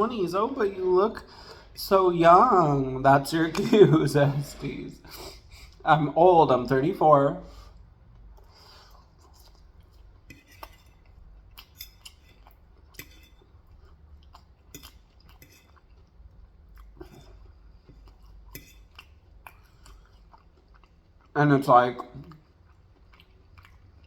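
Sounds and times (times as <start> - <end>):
chewing fried chicken: 7.6 - 24.0.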